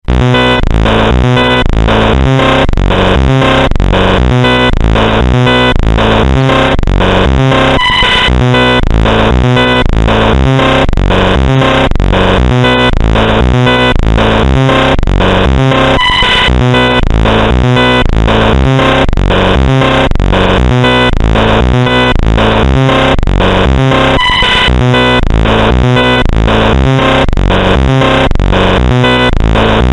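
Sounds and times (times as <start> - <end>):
distorted synthesized alarm pulses: 0.0 - 29.9
steady beep: 0.2 - 29.9.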